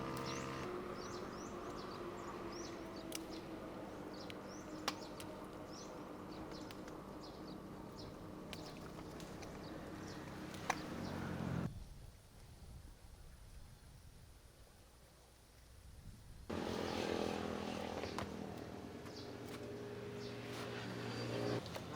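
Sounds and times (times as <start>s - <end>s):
small birds chirping: 0.0s - 11.8s.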